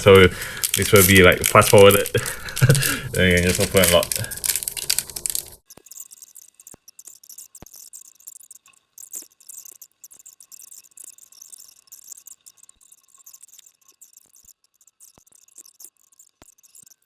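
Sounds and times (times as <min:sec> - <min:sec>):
cards being handled: 0:00.0 - 0:05.6
foil wrappers crinkling: 0:00.0 - 0:06.2.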